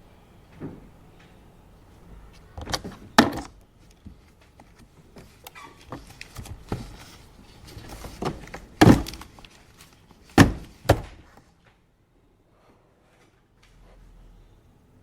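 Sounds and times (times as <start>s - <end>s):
small knocks and rustling: 2.4s - 11.8s
heavy thuds: 10.3s - 11.4s.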